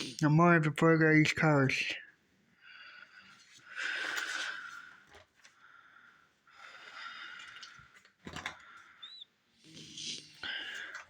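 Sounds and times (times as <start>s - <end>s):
magazine pages rustling: 3.4s - 5.6s.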